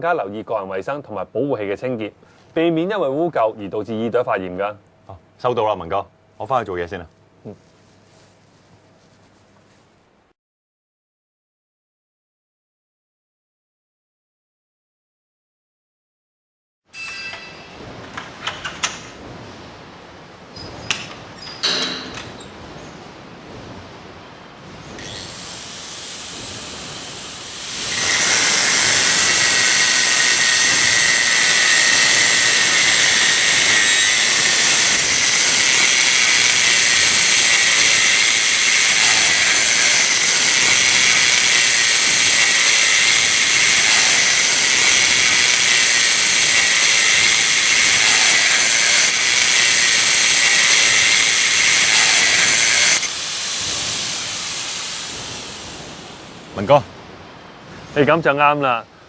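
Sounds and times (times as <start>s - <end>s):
hissing construction machinery: 25.0s - 56.8s.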